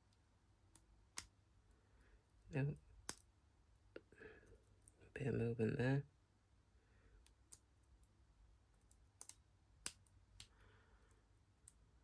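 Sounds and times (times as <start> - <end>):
lock pick metallic clicks: 8.8 - 10.6.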